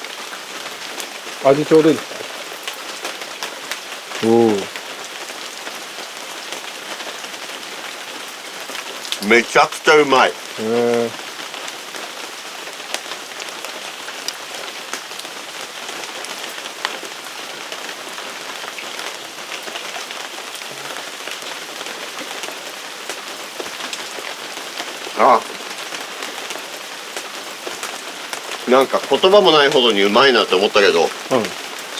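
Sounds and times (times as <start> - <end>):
rain pattering: 0.0 - 31.9
brief vocal sound: 4.2 - 4.7, 9.2 - 11.2, 31.3 - 31.6.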